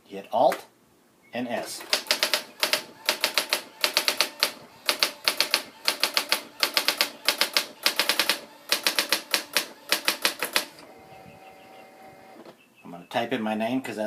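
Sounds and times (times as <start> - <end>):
electronic typewriter printing: 1.8 - 12.4.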